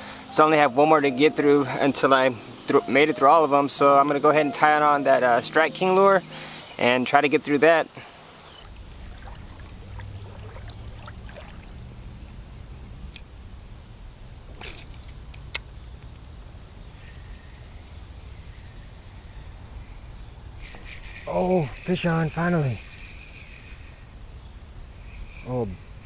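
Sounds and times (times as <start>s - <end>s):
creek water running: 0.0s - 13.6s.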